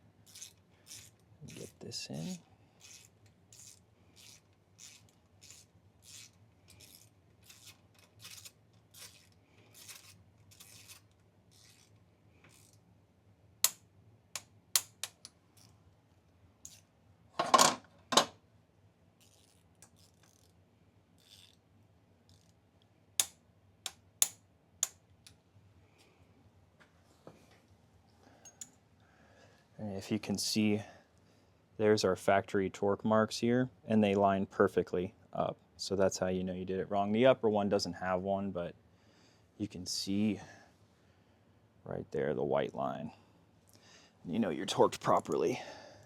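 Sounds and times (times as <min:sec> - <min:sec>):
ratchet wrench rasping: 0:00.2 - 0:11.9, 0:21.2 - 0:21.6.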